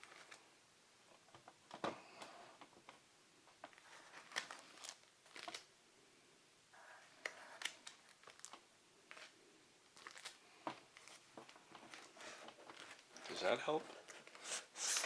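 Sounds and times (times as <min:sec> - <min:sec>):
plastic bags crinkling: 0:03.7 - 0:05.7, 0:07.6 - 0:15.0.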